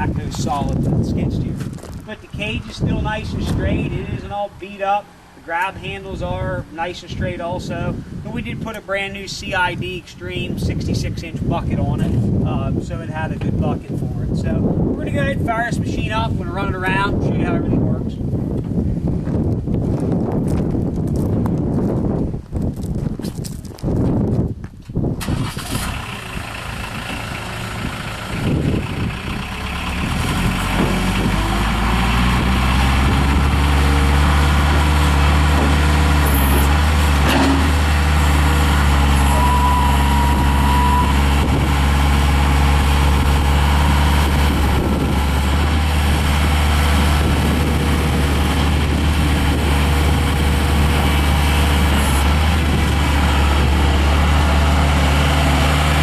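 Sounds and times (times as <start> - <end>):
loader engine running: 25.2 - 56.0
short high-pitched tone: 39.1 - 41.3.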